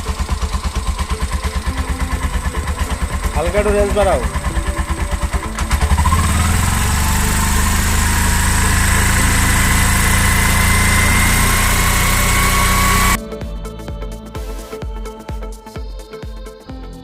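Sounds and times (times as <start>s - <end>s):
auto-rickshaw engine idling: 0.0s - 13.2s.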